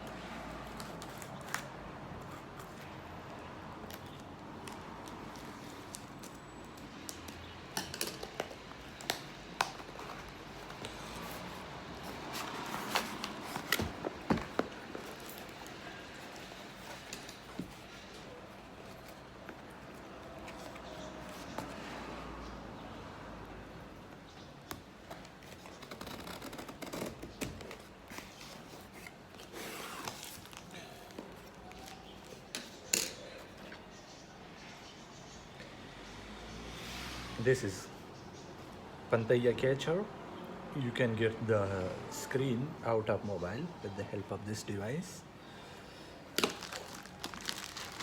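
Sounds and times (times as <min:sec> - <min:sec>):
packaging rustling: 0:08.0 - 0:21.8, 0:25.0 - 0:32.8, 0:46.3 - 0:48.0.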